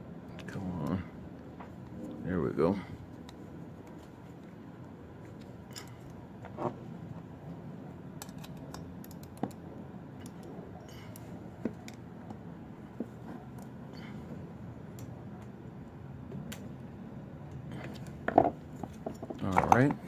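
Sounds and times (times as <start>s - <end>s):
low background hum: 0.0s - 20.0s
screwdriver clicks and taps on metal: 8.2s - 9.6s.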